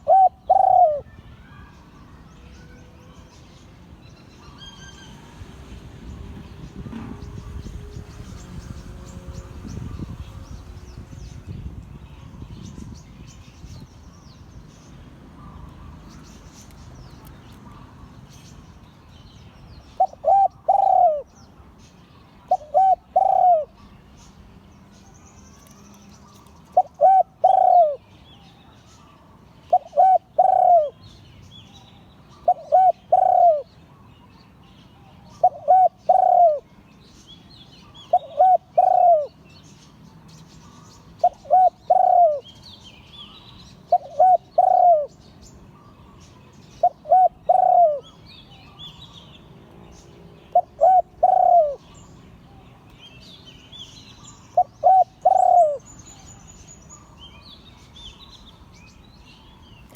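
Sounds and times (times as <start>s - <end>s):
dove cooing: 0.0s - 1.1s, 20.0s - 21.3s, 22.5s - 23.9s, 26.4s - 28.0s, 29.7s - 31.0s, 32.4s - 33.7s, 35.3s - 36.7s, 37.9s - 39.4s, 41.2s - 42.5s, 43.9s - 45.2s, 46.8s - 48.8s, 50.5s - 51.9s, 54.5s - 56.0s.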